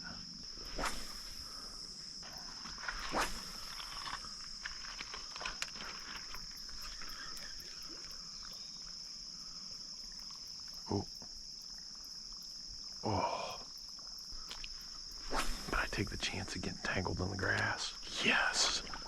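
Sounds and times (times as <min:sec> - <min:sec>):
insects trilling: 0:00.0 - 0:19.0.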